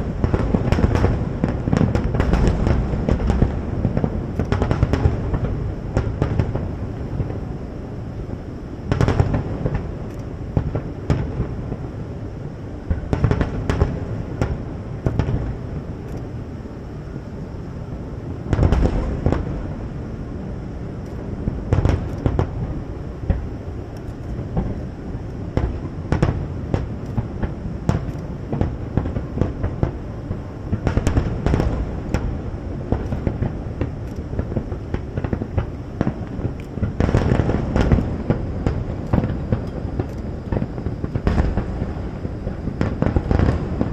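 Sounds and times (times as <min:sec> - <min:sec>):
firework shell bursts and cracks: 0:00.0 - 0:07.4, 0:21.0 - 0:30.0.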